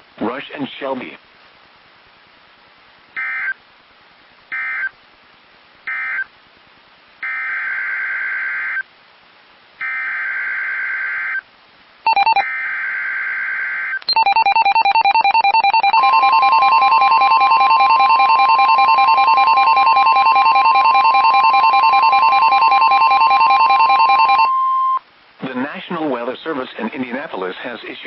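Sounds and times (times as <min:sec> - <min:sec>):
rapidly pulsing electronic beep: 0:12.1 - 0:12.5, 0:14.1 - 0:25.0
emergency alert data bursts: 0:12.1 - 0:12.7, 0:14.0 - 0:25.0
steady warning alarm tone: 0:14.1 - 0:25.0.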